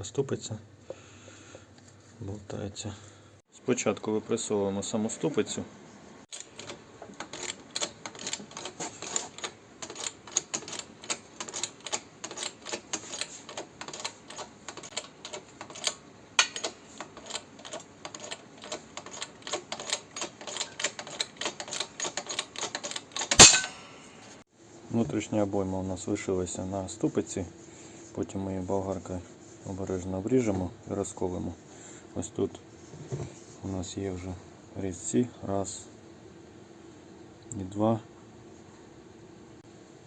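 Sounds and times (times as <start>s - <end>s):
sharp metal knocks: 23.3s - 24.1s.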